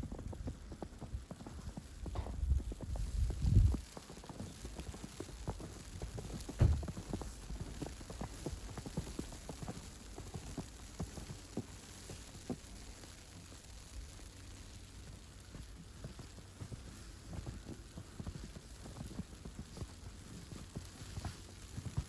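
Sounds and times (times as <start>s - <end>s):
low thump: 6.6s - 6.9s
footsteps crunching in snow: 15.5s - 22.0s.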